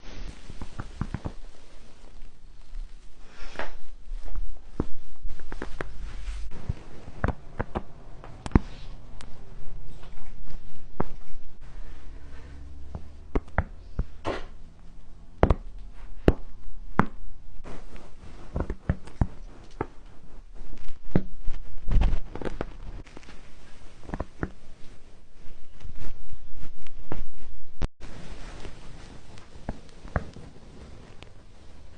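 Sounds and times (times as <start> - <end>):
rustling: 0.0 - 31.9
back cracking pops and clicks: 0.5 - 1.5, 6.5 - 9.3, 29.3 - 31.4.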